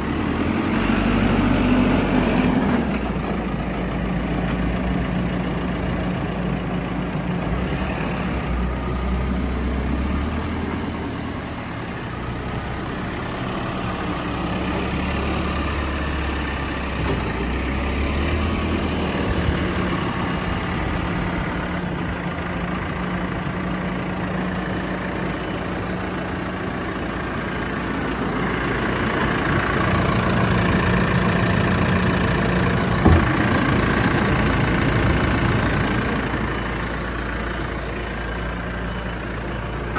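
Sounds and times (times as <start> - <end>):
diesel engine idling: 0.0 - 39.9
short knock: 33.0 - 33.5.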